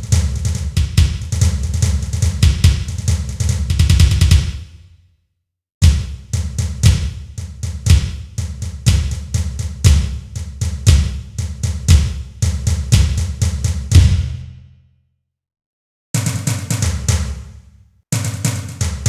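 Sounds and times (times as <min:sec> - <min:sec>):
kick and snare drum hits: 0:00.0 - 0:04.8, 0:05.8 - 0:14.6, 0:16.2 - 0:19.0.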